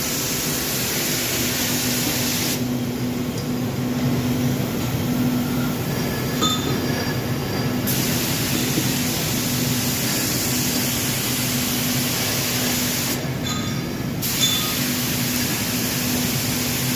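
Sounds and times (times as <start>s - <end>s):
machine pulsing mechanical hum: 0.0s - 16.9s
high spray hiss: 7.9s - 13.2s.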